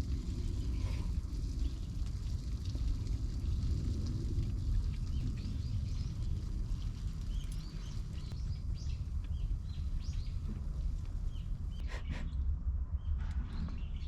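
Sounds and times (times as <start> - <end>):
steady low rumble: 0.0 - 14.0
small birds chirping: 5.0 - 14.0.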